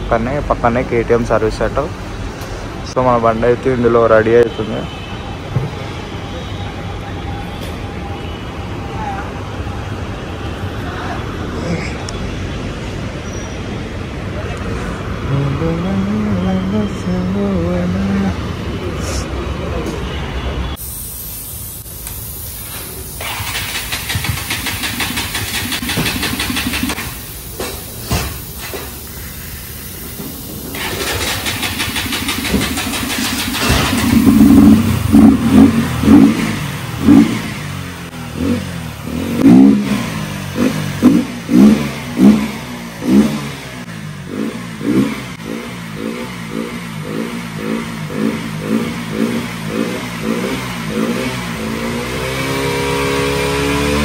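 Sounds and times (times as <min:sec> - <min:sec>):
workshop noise: 0:18.4 - 0:54.0
motorcycle engine throttle blips: 0:30.8 - 0:37.6.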